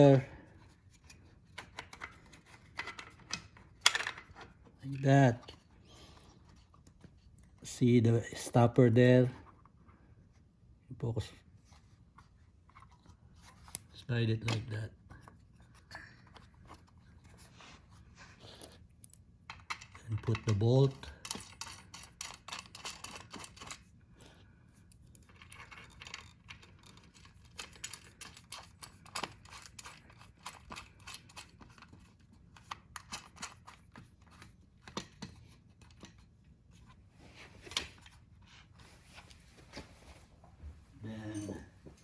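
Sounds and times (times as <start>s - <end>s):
metallic clicks of bolts handled: 18.6s - 23.9s, 24.9s - 36.2s.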